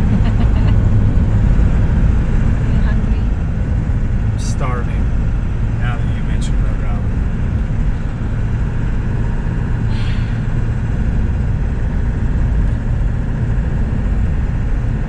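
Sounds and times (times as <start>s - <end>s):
truck engine and road rumble: 0.0s - 15.0s
brief hiss: 9.9s - 10.5s.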